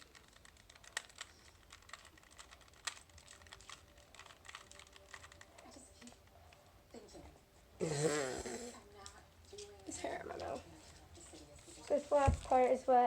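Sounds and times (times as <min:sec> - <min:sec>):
puzzle cube clicking as twisted: 0:00.0 - 0:06.1.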